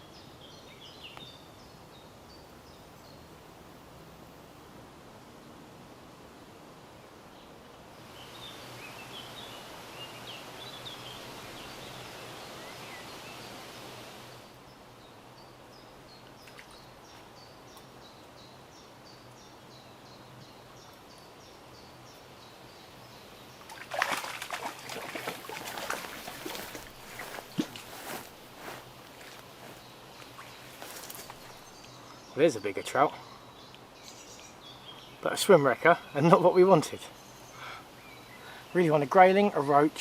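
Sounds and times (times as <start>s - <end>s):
splashing and clattering: 23.7s - 28.8s
birds chirping: 24.9s - 40.0s.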